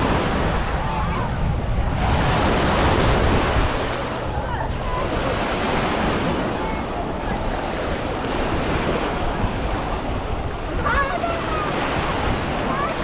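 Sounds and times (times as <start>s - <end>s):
surf washing onto beach: 0.0s - 13.0s
wind buffeting microphone: 0.0s - 13.0s.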